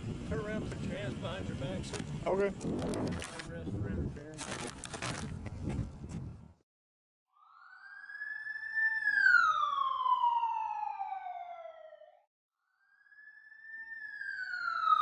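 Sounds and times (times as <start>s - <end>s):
siren wailing: 7.3s - 15.0s.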